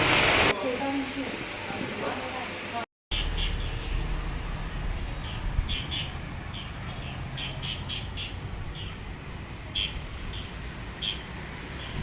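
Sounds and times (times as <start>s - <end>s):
small birds chirping: 5.1s - 12.0s.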